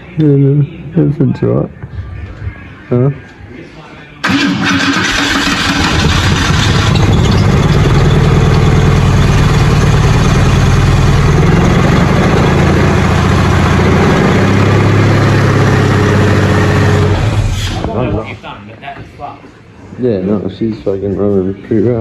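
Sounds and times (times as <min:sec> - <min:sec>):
car engine running unevenly: 0:04.2 - 0:18.0.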